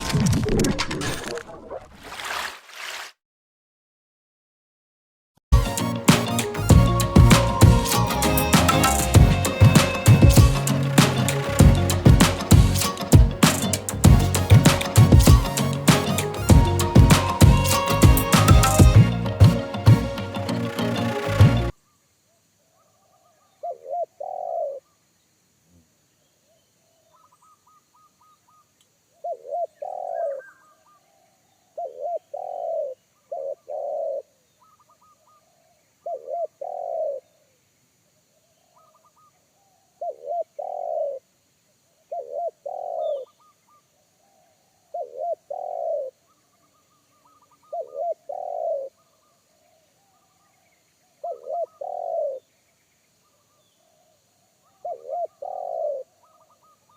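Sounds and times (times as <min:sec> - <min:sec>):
dove cooing: 0:23.6 - 0:24.8, 0:29.2 - 0:30.5, 0:31.8 - 0:35.0, 0:36.0 - 0:37.2, 0:40.0 - 0:41.2, 0:42.1 - 0:43.3, 0:45.0 - 0:46.1, 0:47.6 - 0:48.9, 0:51.2 - 0:52.4, 0:54.8 - 0:56.6.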